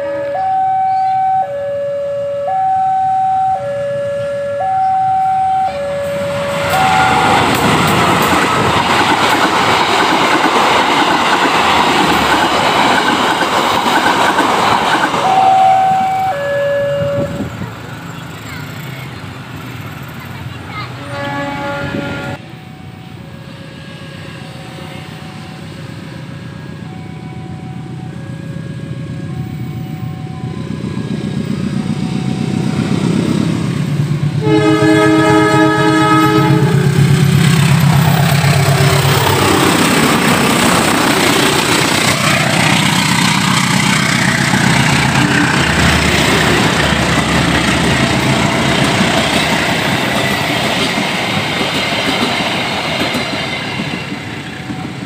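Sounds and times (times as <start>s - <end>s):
two-tone electronic signal: 0.0s - 7.5s, 15.2s - 17.5s
train air horn: 0.0s - 7.8s, 15.2s - 17.5s, 21.0s - 22.6s, 34.4s - 37.1s
diesel locomotive engine rumble: 0.0s - 55.0s
train wheels clacking over rail joints: 6.7s - 15.5s, 36.2s - 55.0s.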